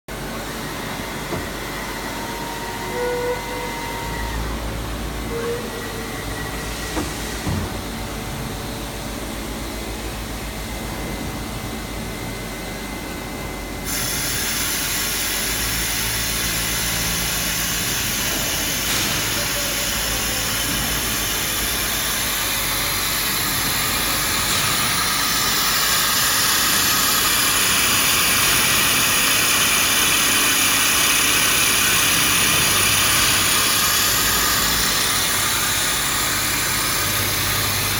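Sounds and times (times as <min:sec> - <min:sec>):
boring mill mechanical noise: 0:00.1 - 0:37.9
hiss: 0:13.9 - 0:37.7.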